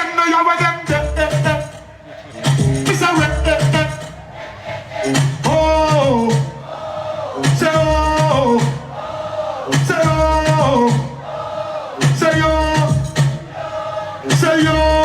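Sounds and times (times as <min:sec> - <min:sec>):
dancehall music: 0:00.0 - 0:15.0
thudding bass beat: 0:00.8 - 0:01.8, 0:02.4 - 0:04.2, 0:05.0 - 0:06.7, 0:07.4 - 0:09.0, 0:09.7 - 0:11.2, 0:12.0 - 0:13.5, 0:14.2 - 0:15.0
crowd singing along: 0:01.6 - 0:15.0.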